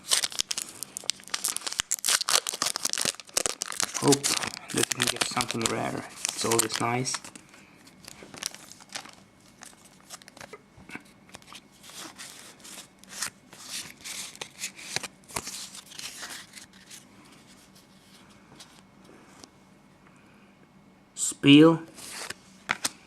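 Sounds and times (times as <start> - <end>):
foil wrapper crinkling and tearing: 0.0 - 10.6, 11.3 - 17.0.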